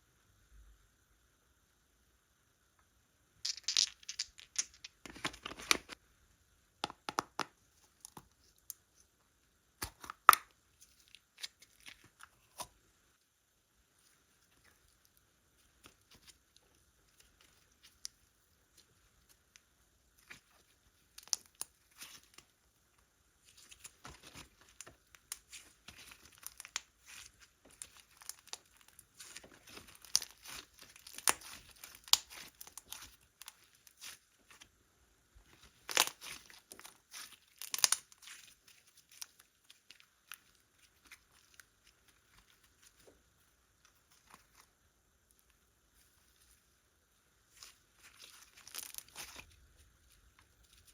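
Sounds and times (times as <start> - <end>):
slime crackling and popping: 23.4 - 34.6, 35.6 - 43.0, 47.6 - 50.9.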